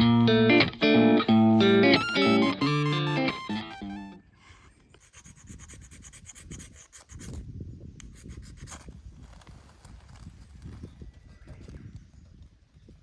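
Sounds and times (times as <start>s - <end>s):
rubbing and scraping: 4.4s - 10.6s.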